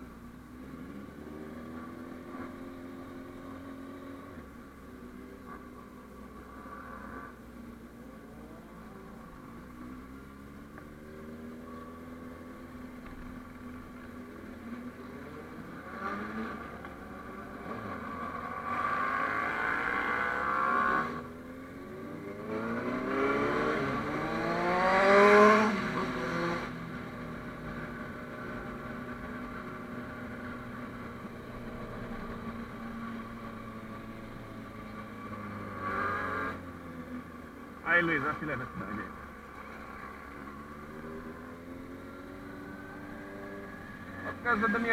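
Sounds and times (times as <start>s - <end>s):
motorcycle engine accelerating: 0.6s - 37.8s.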